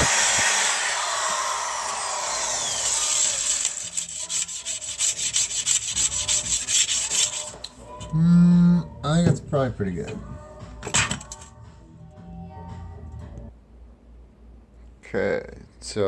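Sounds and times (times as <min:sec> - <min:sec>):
wire brush drill scraping metal pan: 0:02.8 - 0:07.8.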